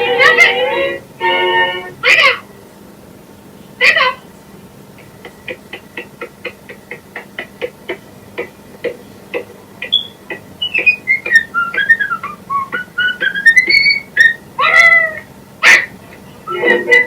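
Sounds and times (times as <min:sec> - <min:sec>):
whistled tune sliding in pitch: 0:09.9 - 0:14.4.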